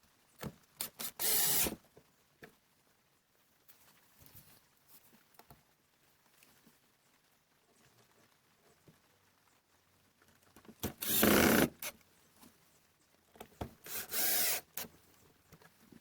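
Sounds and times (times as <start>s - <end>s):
cordless drill driving screws: 0.8s - 1.8s, 10.9s - 11.9s, 13.9s - 14.9s.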